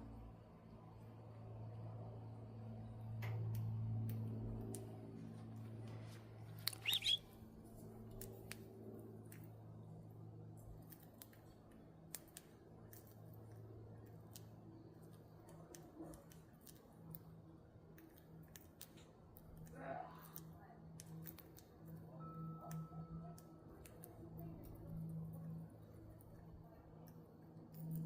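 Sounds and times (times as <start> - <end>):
steady low hum: 0.0 - 28.0
budgies nibbling clicks: 5.9 - 7.2, 8.1 - 28.0
budgie chirp: 6.6 - 7.2.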